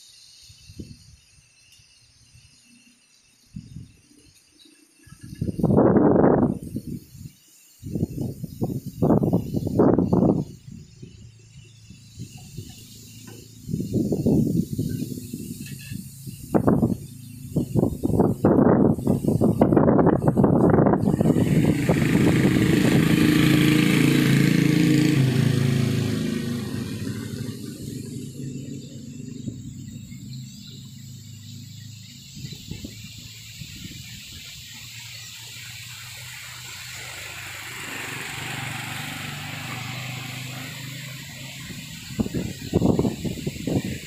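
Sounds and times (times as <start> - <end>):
wind gusting through trees: 0.0 - 44.0
motor engine running: 9.1 - 34.2, 35.0 - 44.0.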